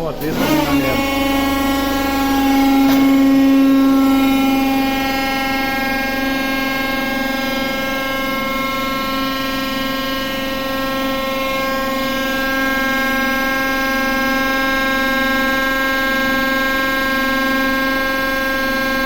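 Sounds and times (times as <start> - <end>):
locomotive machinery whine: 0.0 - 6.2.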